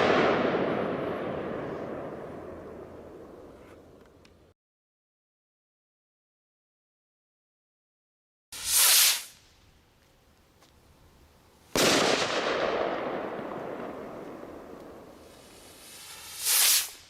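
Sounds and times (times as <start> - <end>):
firework bang with echo: 0.0 - 3.3, 11.8 - 15.2
firework rocket whoosh: 8.6 - 9.4, 15.0 - 17.0.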